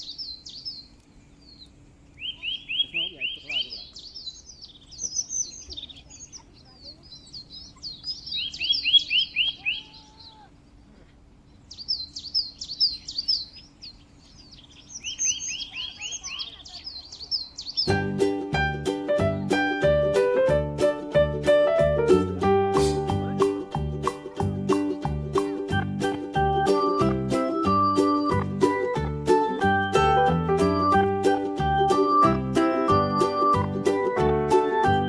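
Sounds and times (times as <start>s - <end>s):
birds singing: 0.0s - 18.1s, 25.7s - 35.0s.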